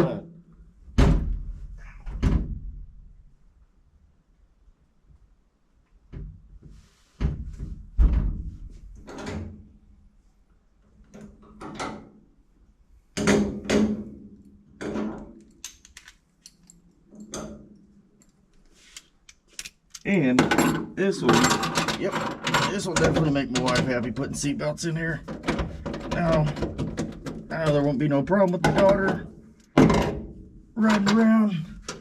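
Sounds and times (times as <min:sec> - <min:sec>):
metallic knocks and clunks: 0:07.2 - 0:09.7, 0:13.2 - 0:14.2, 0:14.8 - 0:15.4, 0:20.3 - 0:24.4, 0:25.2 - 0:32.0.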